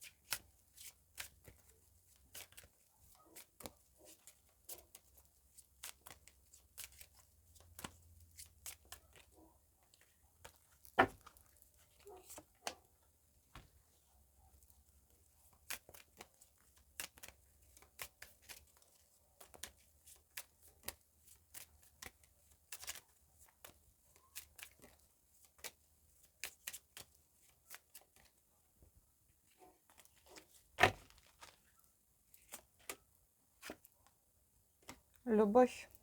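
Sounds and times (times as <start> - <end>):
cards being shuffled: 0.0 - 2.8, 3.4 - 9.3, 15.4 - 28.4, 29.9 - 31.7
cards slapping: 2.3 - 2.7, 5.8 - 9.2, 10.4 - 11.5, 15.6 - 18.8, 24.4 - 25.8.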